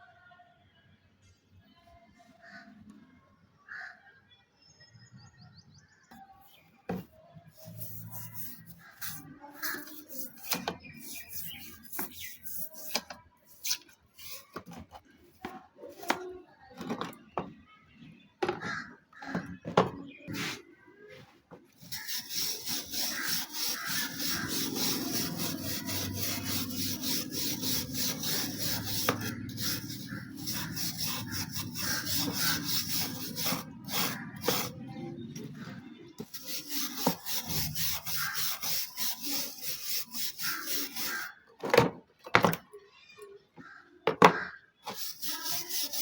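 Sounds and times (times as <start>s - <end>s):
rubbing rust off metal blade: 6.5s - 17.4s, 21.7s - 41.4s, 44.8s - 46.0s.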